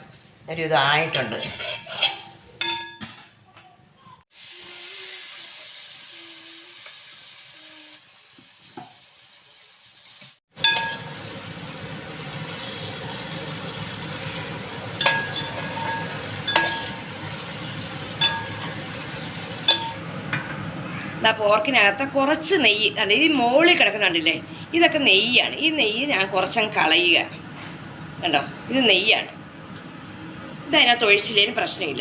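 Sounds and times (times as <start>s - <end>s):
meat sizzling in a pan: 4.3s - 20.0s
spoon clinking against pan: 10.6s - 11.1s, 15.0s - 17.0s, 18.2s - 18.8s, 19.7s - 20.0s.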